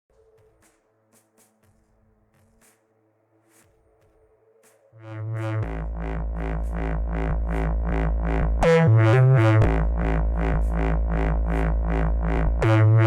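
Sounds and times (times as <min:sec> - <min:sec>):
electronic music with deep bass: 0:04.6 - 0:13.0.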